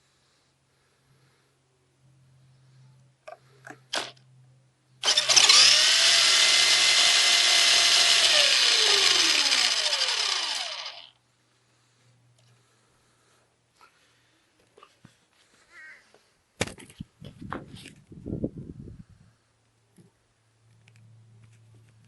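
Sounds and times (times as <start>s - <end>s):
electric motor whining: 5.0s - 11.1s.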